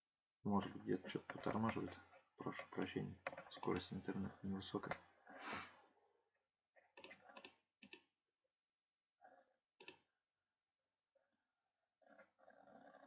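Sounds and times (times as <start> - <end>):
mouse and keyboard clicks: 6.9 - 8.1, 9.8 - 10.1.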